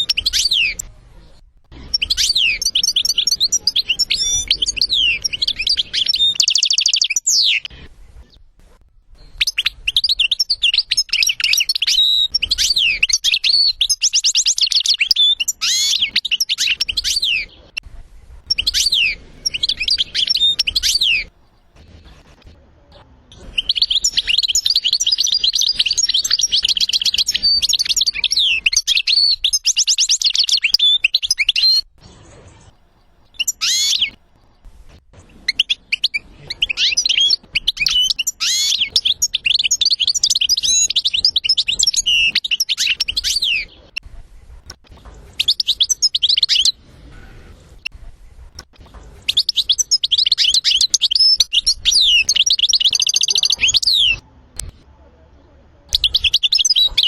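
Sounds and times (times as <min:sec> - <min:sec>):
goldfinch twittering and trilling: 0:00.0 - 0:00.9, 0:01.9 - 0:08.4, 0:09.2 - 0:17.7, 0:18.4 - 0:21.3, 0:23.4 - 0:31.8, 0:35.5 - 0:44.0, 0:44.9 - 0:46.8.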